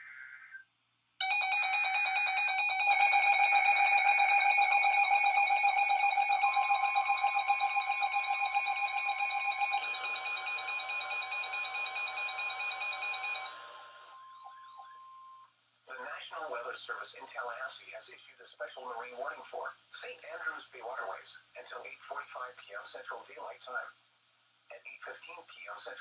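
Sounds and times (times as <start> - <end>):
steady radio warning tone: 1.2 - 13.4
fast-pulsing electronic alarm: 1.2 - 13.5.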